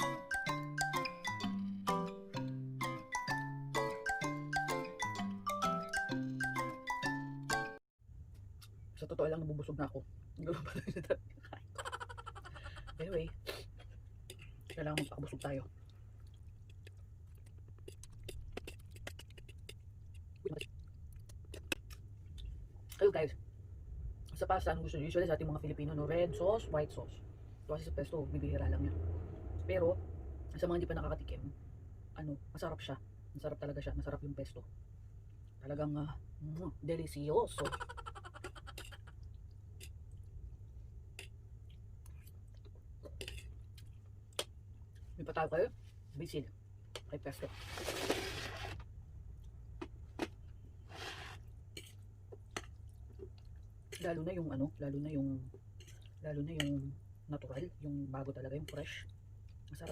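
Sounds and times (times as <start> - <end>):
chewing with wet mouth clicks: 14.2 - 23.0, 41.2 - 45.0, 51.8 - 54.2
person chewing: 15.8 - 22.9
mouth clicks and smacks: 16.3 - 22.5
low hum: 20.7 - 37.1.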